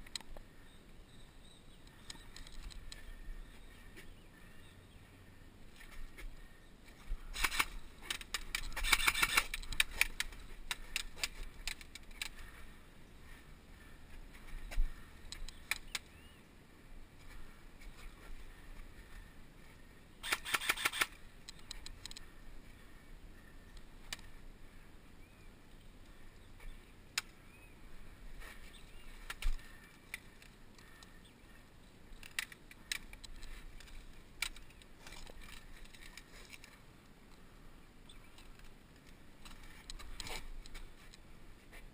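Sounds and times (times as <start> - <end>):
airsoft gun bursts: 8.6 - 10.0, 20.2 - 21.2.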